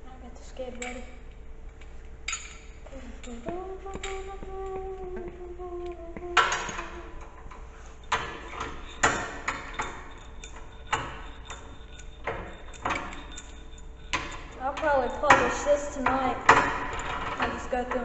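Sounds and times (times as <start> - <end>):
metal parts clanking: 6.4 - 18.0.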